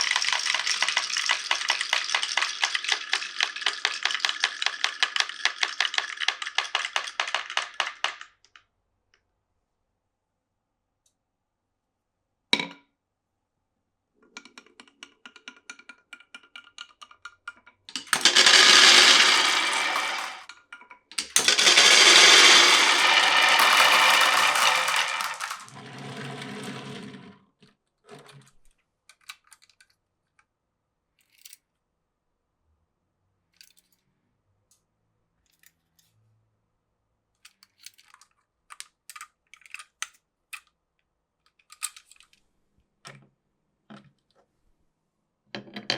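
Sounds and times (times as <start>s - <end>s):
marbles rolling through wooden run: 0.0s - 8.3s, 17.9s - 20.4s, 21.2s - 27.4s
marble clicks: 0.0s - 8.6s, 16.4s - 20.4s, 21.2s - 27.1s.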